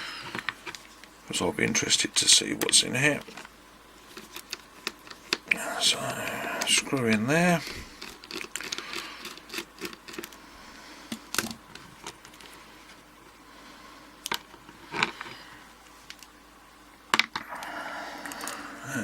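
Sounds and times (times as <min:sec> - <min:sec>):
padlock parts clicking and scraping: 0:08.0 - 0:10.4.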